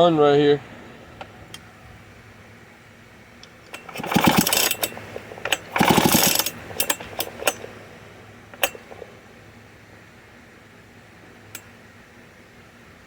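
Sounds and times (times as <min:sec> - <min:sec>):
engine turning over with rattle: 0:03.4 - 0:09.3
chainsaw recoil starter pulled: 0:03.6 - 0:07.7.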